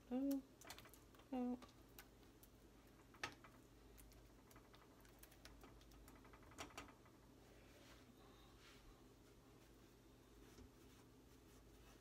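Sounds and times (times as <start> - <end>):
faint clicks and taps: 0.1 - 7.3.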